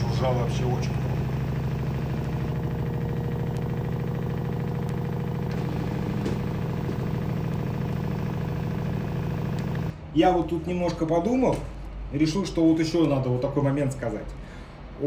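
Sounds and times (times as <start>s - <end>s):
washing machine humming: 0.0s - 10.0s.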